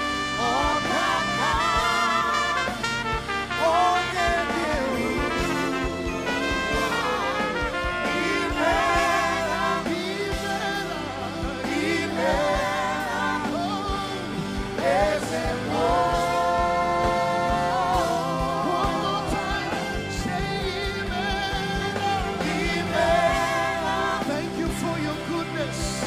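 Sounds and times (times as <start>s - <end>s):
gospel worship band music: 0.0s - 26.0s.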